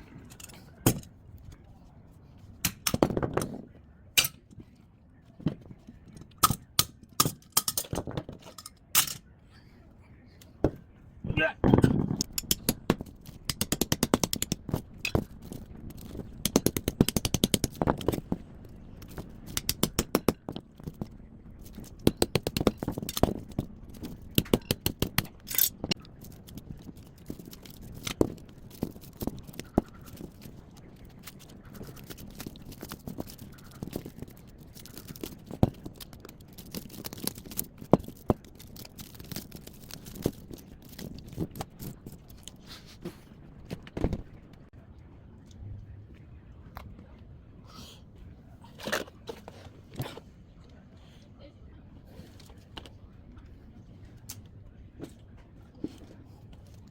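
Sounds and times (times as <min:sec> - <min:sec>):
knocks and scrapes: 0:02.5 - 0:09.2, 0:11.6 - 0:44.6.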